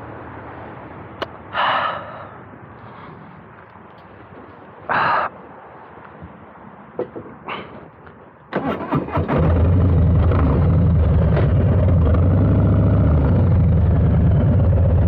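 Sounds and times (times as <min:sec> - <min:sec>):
motorcycle engine cranking: 0:08.5 - 0:12.2
motorcycle engine idling: 0:10.0 - 0:15.0.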